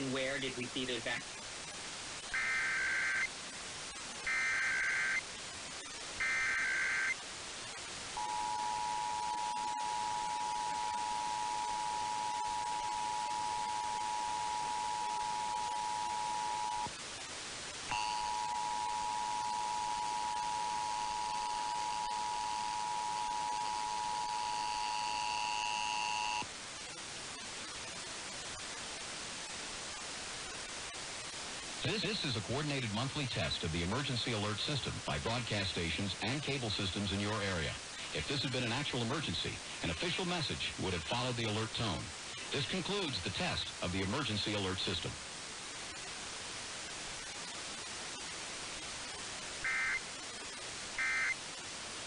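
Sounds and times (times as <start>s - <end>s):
radio static hiss: 0.0s - 52.0s
data bursts: 2.2s - 3.4s, 4.1s - 16.9s, 17.9s - 26.5s, 49.1s - 51.5s
two-tone attention signal: 2.4s - 3.3s, 4.2s - 5.2s, 6.2s - 7.2s, 8.2s - 16.9s, 17.9s - 26.4s, 49.6s - 50.0s, 51.0s - 51.4s.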